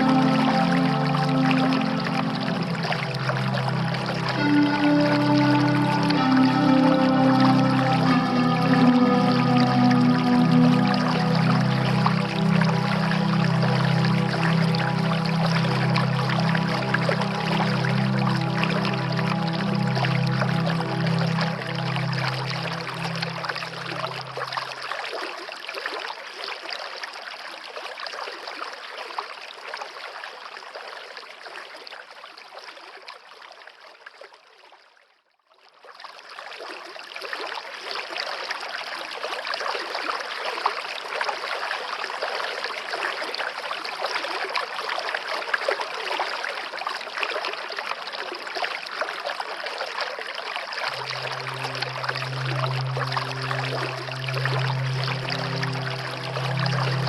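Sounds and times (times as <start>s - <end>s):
low steady music tone: 0.0s - 25.0s, 50.8s - 57.0s
running water like a stream: 0.0s - 57.0s.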